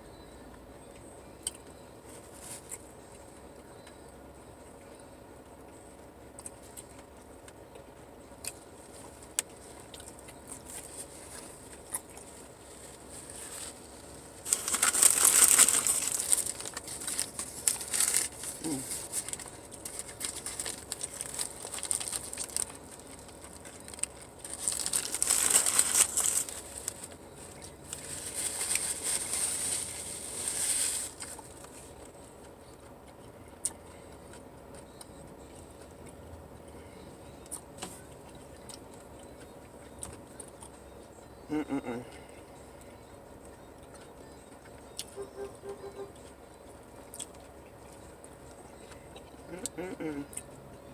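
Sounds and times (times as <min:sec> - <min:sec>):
paper wrapper crinkling: 0:12.2 - 0:32.1.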